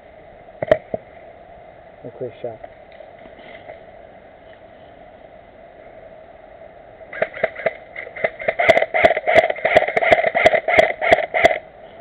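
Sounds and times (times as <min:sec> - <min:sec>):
airsoft gun shots: 0:07.1 - 0:11.6.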